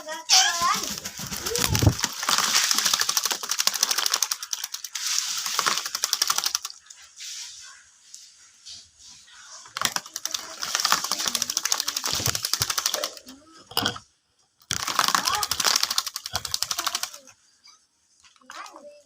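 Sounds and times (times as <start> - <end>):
myna chattering: 0.0 - 4.8, 9.5 - 13.8, 14.8 - 17.4.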